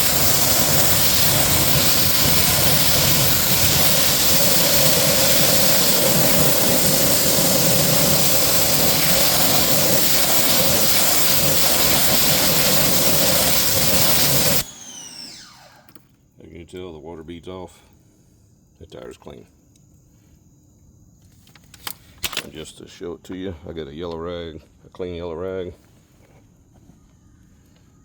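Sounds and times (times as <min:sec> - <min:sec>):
pressure washer spraying hiss: 0:00.0 - 0:15.0.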